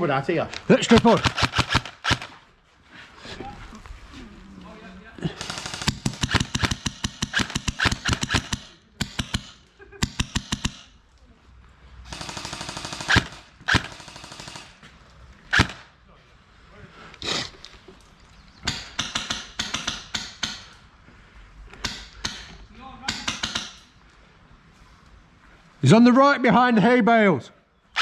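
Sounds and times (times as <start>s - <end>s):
airsoft guns firing bursts: 0.8s - 2.4s, 5.3s - 10.9s, 12.1s - 14.8s, 15.5s - 15.9s.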